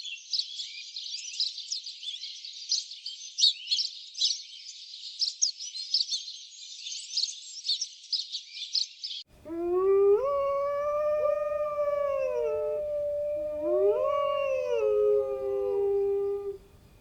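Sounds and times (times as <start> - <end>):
dog howling: 9.4 - 16.7.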